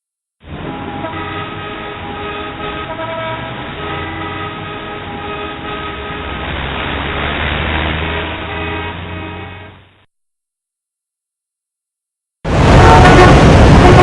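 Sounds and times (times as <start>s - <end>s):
low vehicle rumble: 0.4s - 10.0s
sustained pitched horn tones: 0.5s - 10.0s, 12.5s - 14.0s.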